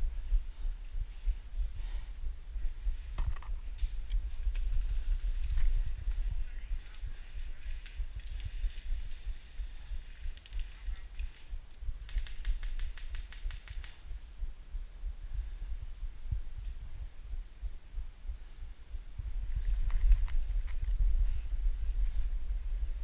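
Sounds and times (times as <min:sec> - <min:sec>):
airsoft guns firing rapid clicks: 0:12.0 - 0:14.0.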